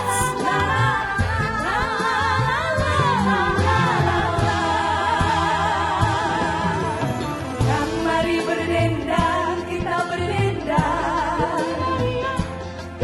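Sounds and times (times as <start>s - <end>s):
woman singing with vibrato: 0.0s - 1.4s.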